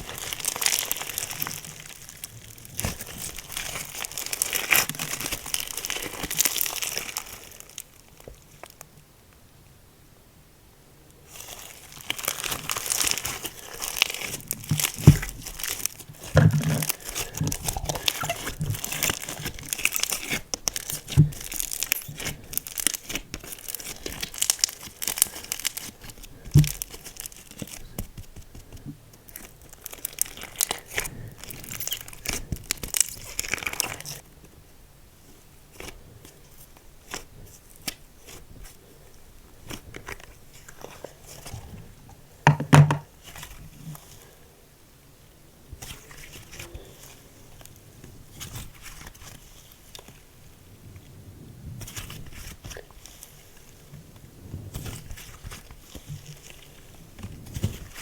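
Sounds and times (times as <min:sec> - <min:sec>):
slime crackling and popping: 0:00.0 - 0:08.8, 0:11.3 - 0:34.2.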